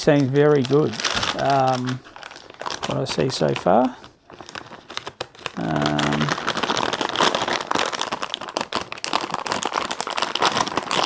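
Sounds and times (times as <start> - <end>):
plastic packaging crinkling: 0.0 - 11.0
man humming: 5.6 - 6.4.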